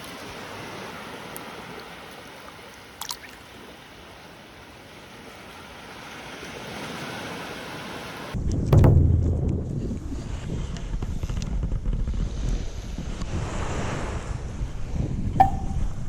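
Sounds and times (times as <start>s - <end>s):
surf washing onto shore: 3.4s - 9.4s
wind buffeting microphone: 8.4s - 16.0s.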